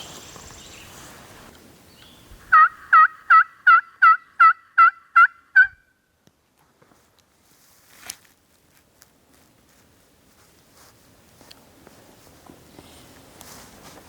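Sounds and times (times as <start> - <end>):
turkey yelps: 2.5 - 5.9.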